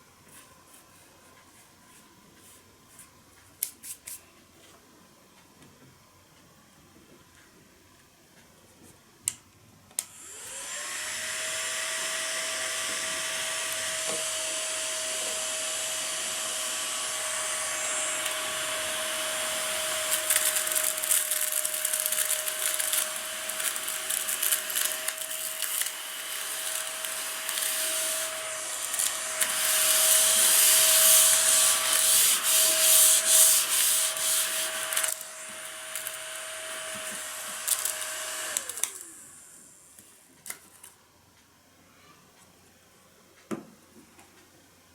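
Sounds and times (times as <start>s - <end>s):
small vacuum motor whine: 10.0s - 40.0s
debris rustling in nozzle: 20.0s - 36.2s.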